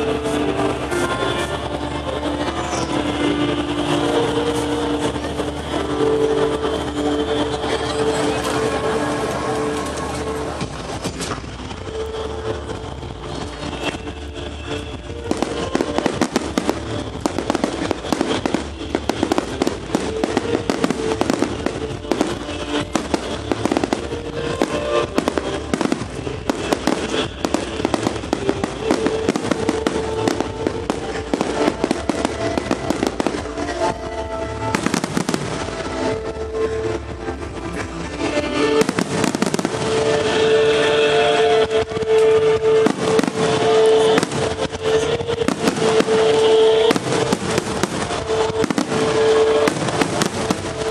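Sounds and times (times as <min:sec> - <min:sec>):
fireworks bursting and crackling: 0:00.0 - 0:50.9
music with long held notes: 0:00.0 - 0:50.9.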